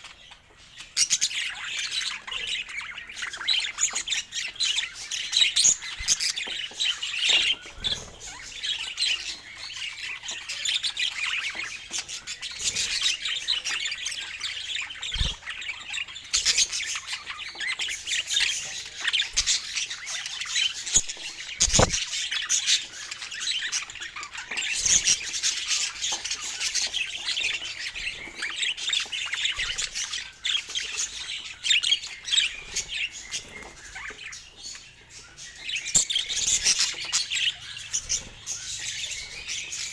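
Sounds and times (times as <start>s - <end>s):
budgerigars chattering: 0.0s - 39.9s
low thumps: 21.6s - 22.0s.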